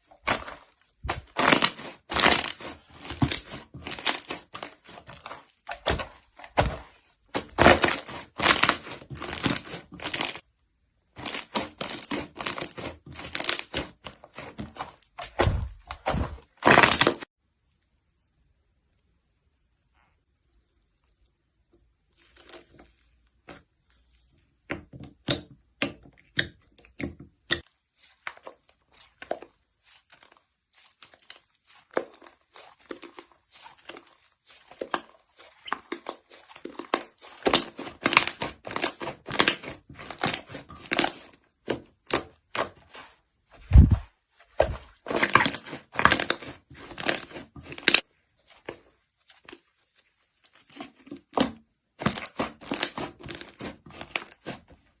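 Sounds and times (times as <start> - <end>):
slime crackling and popping: 0.2 - 10.4, 11.2 - 17.2, 26.3 - 43.1, 44.6 - 48.2, 48.8 - 54.7.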